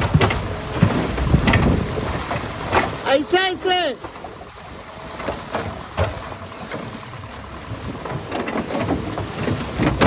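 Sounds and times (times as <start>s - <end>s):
irregular knocks and clatter: 0.0s - 3.0s, 5.1s - 7.1s, 7.8s - 10.0s
wind buffeting microphone: 0.0s - 3.0s.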